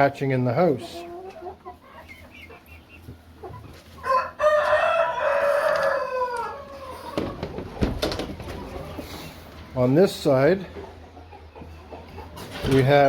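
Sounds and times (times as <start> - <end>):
hen clucking: 0.0 - 12.8
rooster crowing: 4.0 - 7.1.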